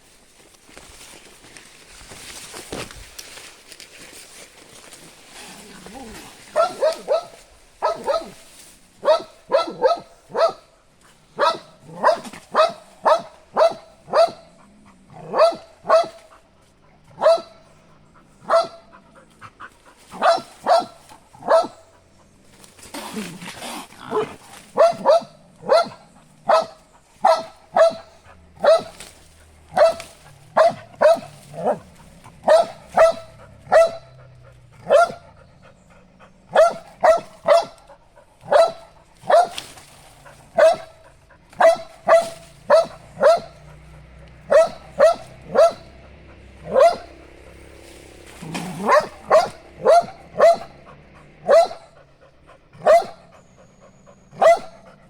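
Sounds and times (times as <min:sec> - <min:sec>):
dog barking: 0:06.5 - 0:16.4, 0:17.0 - 0:19.1, 0:20.1 - 0:22.1, 0:24.0 - 0:35.5, 0:36.5 - 0:47.8, 0:48.4 - 0:55.0.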